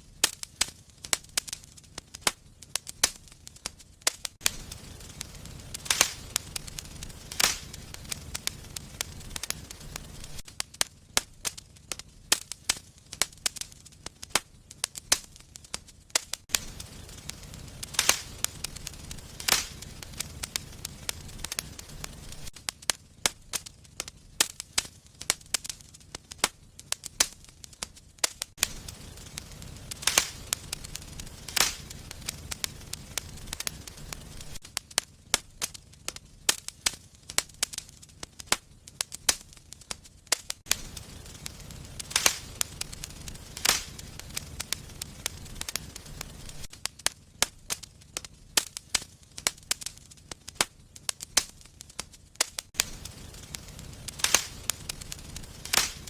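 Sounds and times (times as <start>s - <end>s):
low rumble of fire: 0.0s - 56.0s
wood fire crackling: 0.0s - 56.0s.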